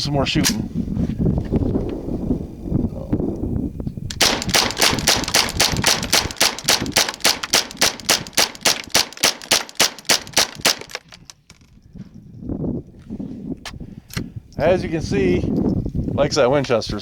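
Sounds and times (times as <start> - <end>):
rifle rapid fire shots: 4.2 - 11.1.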